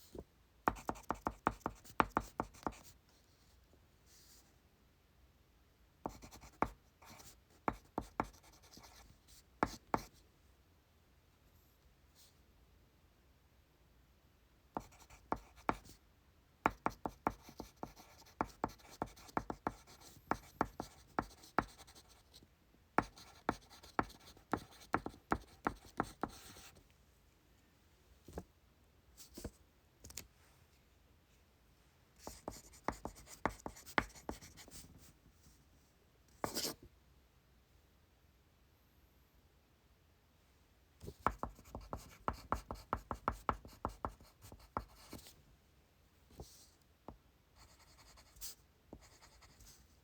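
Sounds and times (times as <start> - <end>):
pencil writing on paper: 0.7 - 2.9, 6.1 - 10.1, 14.8 - 16.0, 16.7 - 22.4, 23.0 - 26.8, 32.2 - 34.8, 36.4 - 36.8, 41.1 - 45.3, 47.6 - 49.6.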